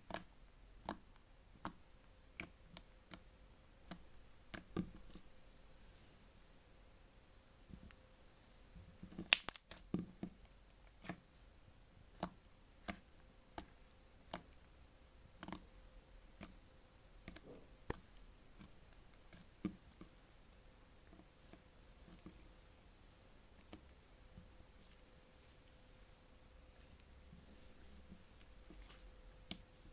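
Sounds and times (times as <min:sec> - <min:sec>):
slime clicking pops: 0:09.2 - 0:09.8.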